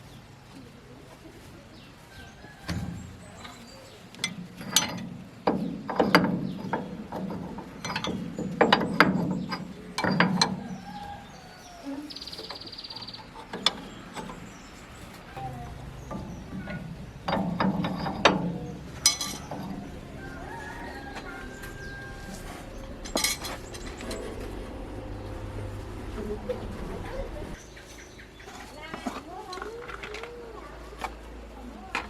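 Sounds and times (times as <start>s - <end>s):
metal tools clanking: 2.5s - 27.6s.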